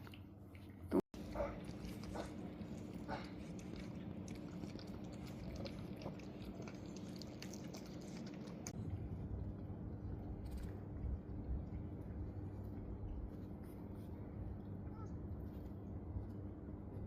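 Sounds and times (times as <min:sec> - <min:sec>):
steady low hum: 0:00.0 - 0:17.0
cat chewing food: 0:00.5 - 0:13.6.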